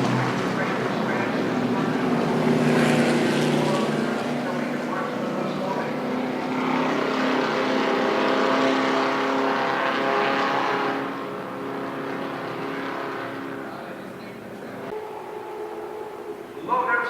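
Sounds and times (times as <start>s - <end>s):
race car engine running: 0.0s - 17.0s.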